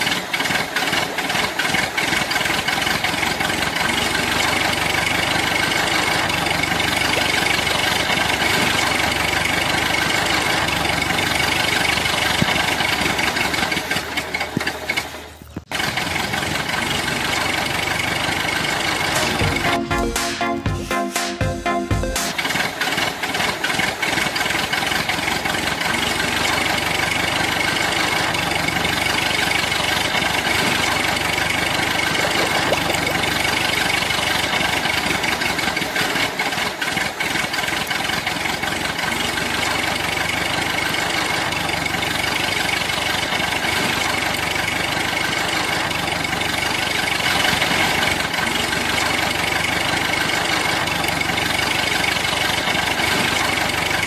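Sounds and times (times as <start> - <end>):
engine idling: 0.0 - 20.2, 22.0 - 54.0.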